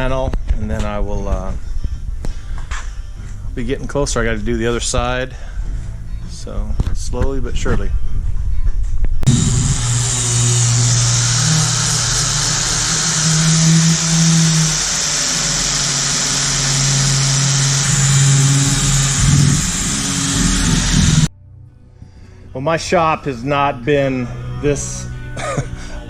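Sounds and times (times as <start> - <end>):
circular saw cutting metal: 9.3 - 21.3.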